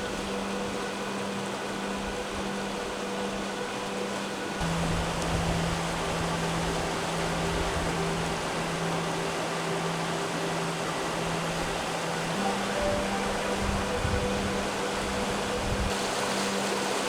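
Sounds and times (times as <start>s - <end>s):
held low musical note: 4.6s - 17.0s
steady rushing noise: 4.6s - 17.0s.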